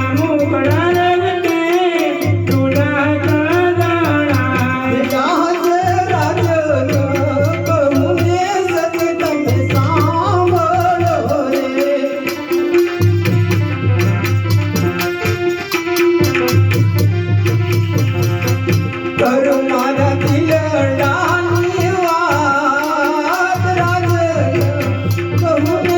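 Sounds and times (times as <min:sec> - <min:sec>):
small rattling percussion: 0:00.0 - 0:25.9.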